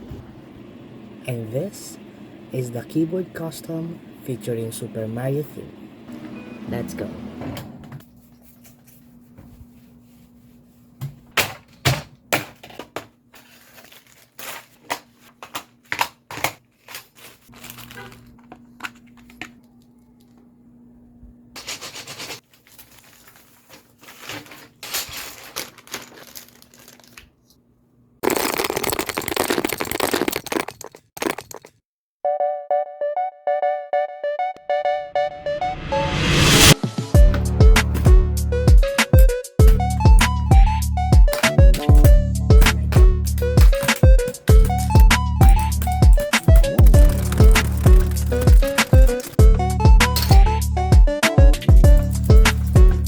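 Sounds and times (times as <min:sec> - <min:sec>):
keyboard keycaps clicking: 0:41.2 - 0:49.4.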